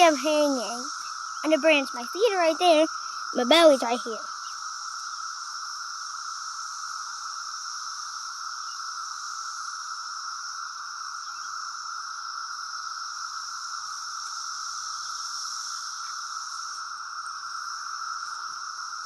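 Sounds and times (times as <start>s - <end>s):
cicadas droning: 0.0s - 19.0s.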